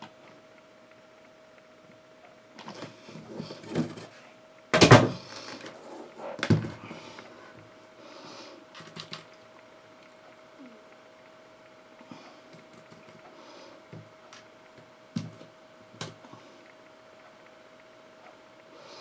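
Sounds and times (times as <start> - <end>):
faint steady hum: 0.0 - 19.0
knocks and thumps: 4.8 - 5.2, 6.4 - 6.8.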